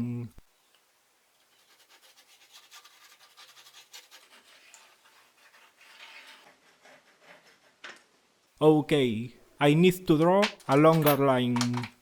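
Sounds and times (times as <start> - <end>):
scratchy drawing on wood: 1.5 - 7.9.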